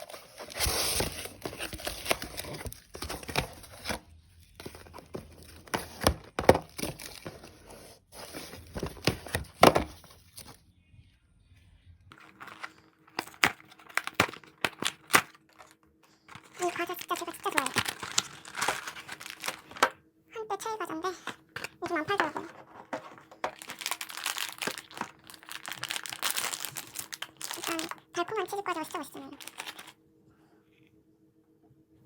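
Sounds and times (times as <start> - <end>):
plastic packaging crinkling: 0.0 - 3.9, 4.6 - 7.6, 12.1 - 20.0, 21.2 - 30.0.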